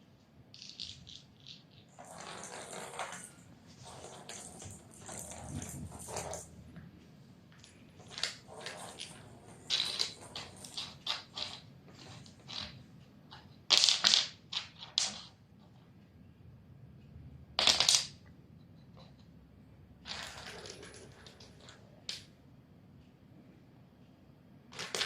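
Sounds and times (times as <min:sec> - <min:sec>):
kitten rustling and scratching: 0:00.6 - 0:06.6, 0:07.9 - 0:13.4.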